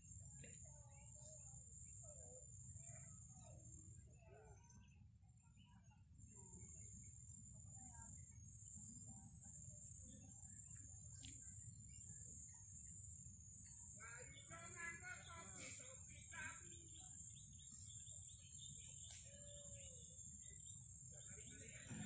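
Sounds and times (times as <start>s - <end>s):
bird chirps: 0.3s - 22.0s
high insect drone: 6.3s - 22.0s.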